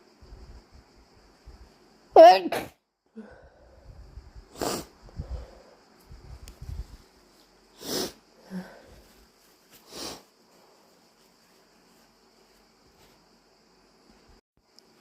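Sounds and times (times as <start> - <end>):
person sniffing: 4.5 - 5.8, 7.7 - 10.4.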